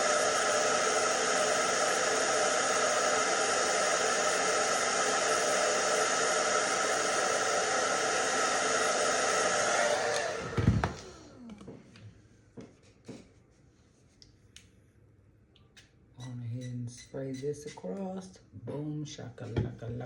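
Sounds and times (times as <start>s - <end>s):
hair dryer blowing: 0.0s - 12.0s.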